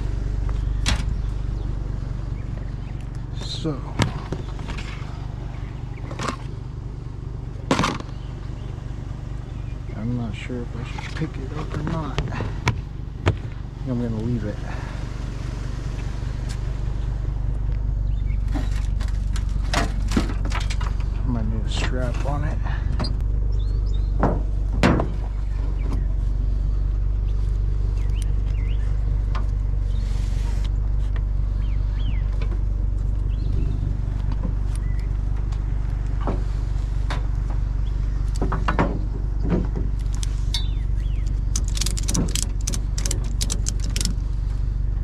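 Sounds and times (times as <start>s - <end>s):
truck engine running: 0.0s - 45.0s
clicks and knocks: 41.2s - 44.2s.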